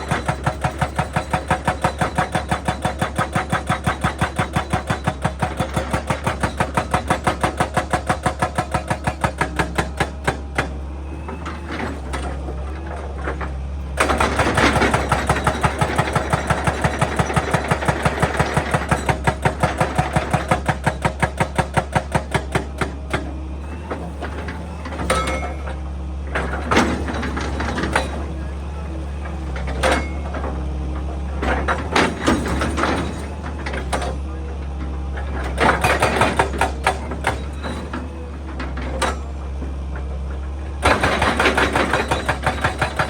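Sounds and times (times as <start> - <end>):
hydraulic breaker hammering rock: 0.0 - 43.0
diesel engine humming: 22.3 - 43.0.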